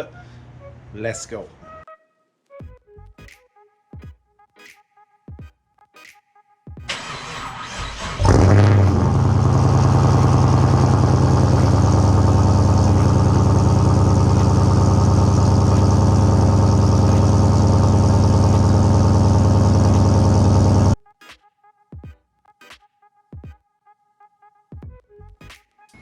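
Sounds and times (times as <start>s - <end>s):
car engine fast idle: 6.9s - 21.0s.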